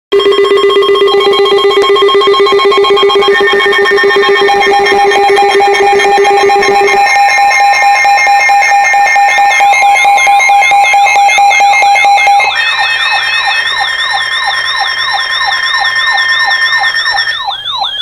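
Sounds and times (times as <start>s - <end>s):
steady piercing alert tone: 0.1s - 18.0s
sweeping siren-like tone: 0.2s - 18.0s.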